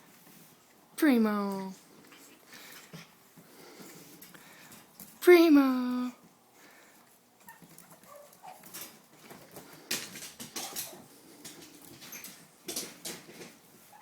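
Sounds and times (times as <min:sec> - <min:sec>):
puppies scuffling: 0:00.0 - 0:05.2, 0:06.2 - 0:14.0
puppies whimpering and squeaking: 0:07.4 - 0:08.9.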